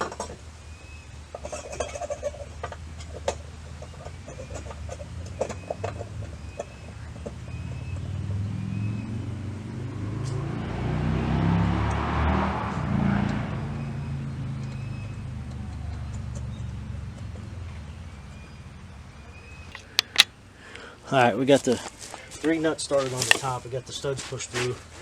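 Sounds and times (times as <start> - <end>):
passing vehicle rumble: 2.9 - 20.7
metal tools clinking: 19.7 - 20.3.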